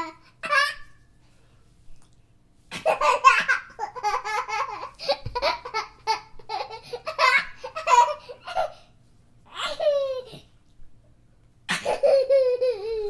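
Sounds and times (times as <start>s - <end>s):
baby laughing: 0.0s - 0.9s, 2.7s - 8.8s, 9.5s - 10.5s, 11.7s - 13.0s.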